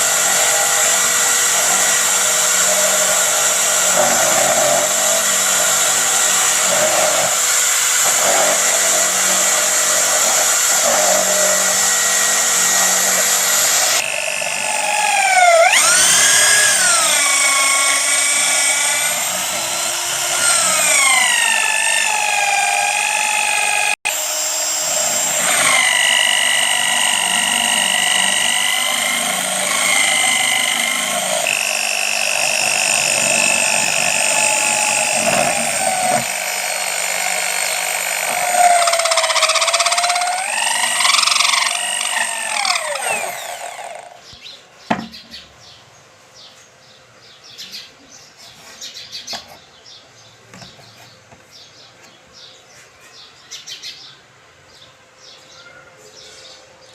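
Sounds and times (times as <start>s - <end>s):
electric drill whining: 0.0s - 44.2s.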